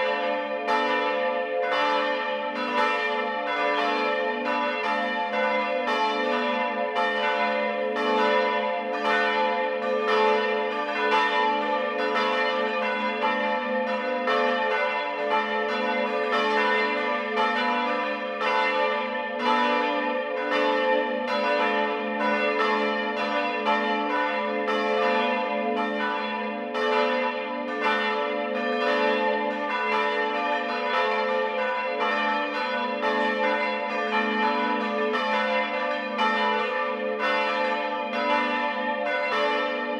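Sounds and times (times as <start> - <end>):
church bells ringing: 0.0 - 39.9.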